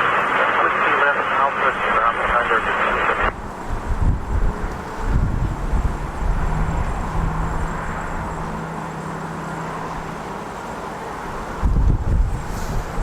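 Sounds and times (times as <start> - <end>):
steady low hum: 0.0 - 13.0
gusty wind rumbling on microphone: 1.8 - 8.8, 11.2 - 13.0.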